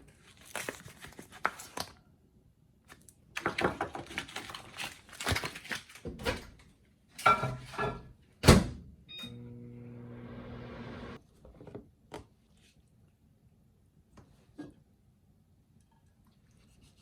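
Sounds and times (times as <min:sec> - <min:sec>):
kitchen clatter and knocks: 0:07.2 - 0:08.7
steady appliance hum: 0:07.3 - 0:11.2.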